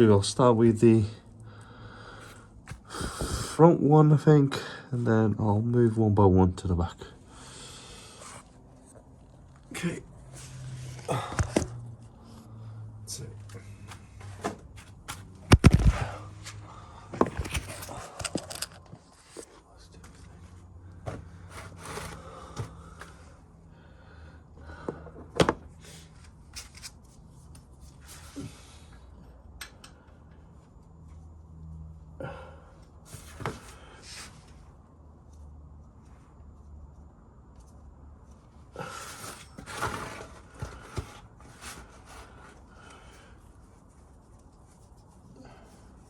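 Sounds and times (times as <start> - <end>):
hand tools clicking and scraping: 17.2 - 19.5
hand tool scraping and rustling: 17.2 - 20.2, 21.1 - 23.1, 38.8 - 42.7.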